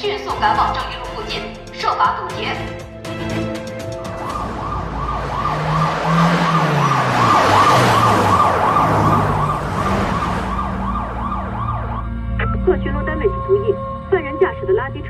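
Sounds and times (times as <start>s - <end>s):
traffic rushing by: 3.3s - 12.2s
police sirens yelping: 4.2s - 12.7s.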